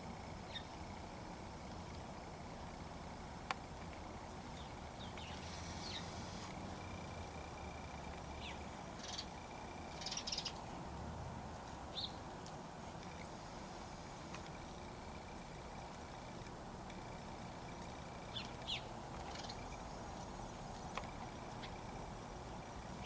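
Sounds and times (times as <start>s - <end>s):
birds chirping: 0.4s - 1.0s, 4.4s - 10.8s, 11.8s - 12.3s, 17.0s - 23.0s
harsh bird calls: 4.6s - 6.4s, 8.4s - 10.7s.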